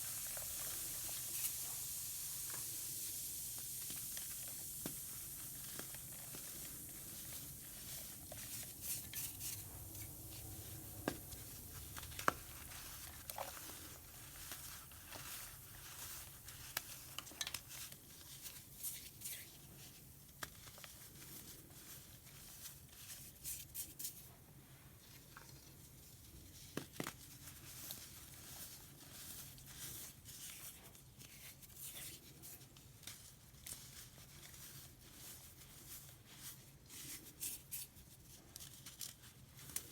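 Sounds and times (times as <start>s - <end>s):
fizzing hiss of bubbles: 0.0s - 19.7s.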